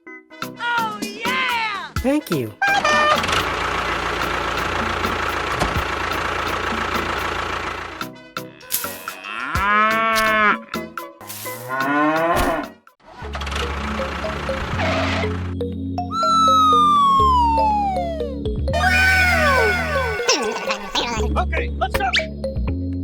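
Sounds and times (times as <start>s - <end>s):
engine running: 2.6s - 9.4s, 11.3s - 15.7s
cow mooing: 9.2s - 10.6s, 11.4s - 12.7s.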